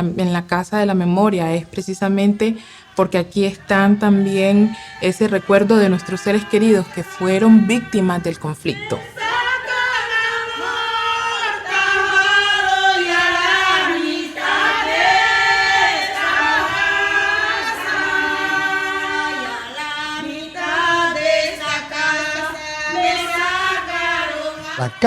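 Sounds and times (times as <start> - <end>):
women singing a cappella: 0.0 - 25.0.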